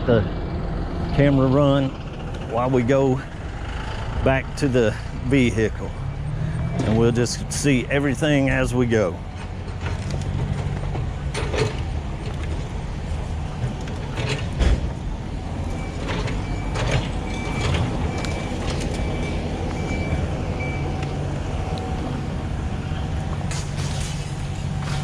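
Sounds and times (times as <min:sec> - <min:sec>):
heavy vehicle engine running: 0:00.0 - 0:25.0
reversing alarm beeping: 0:05.4 - 0:09.4, 0:15.5 - 0:22.2.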